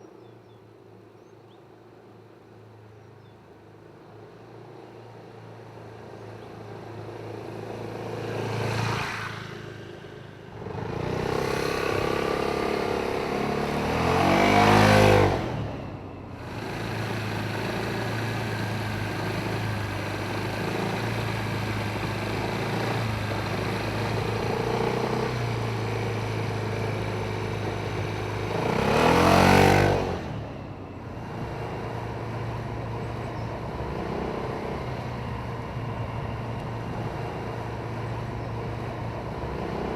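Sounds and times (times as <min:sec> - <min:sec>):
scooter engine passing: 0:04.6 - 0:39.9.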